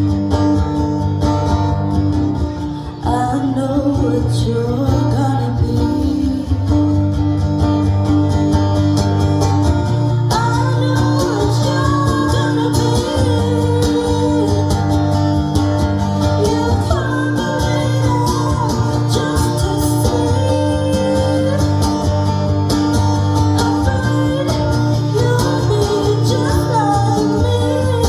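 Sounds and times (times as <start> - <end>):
guitar strumming: 0.0 - 28.0
person singing: 2.6 - 6.9, 10.2 - 28.0.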